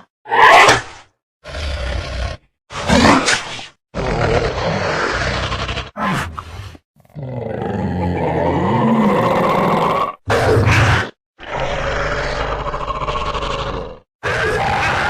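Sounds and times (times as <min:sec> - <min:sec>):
dinosaur calls: 0:07.2 - 0:15.0.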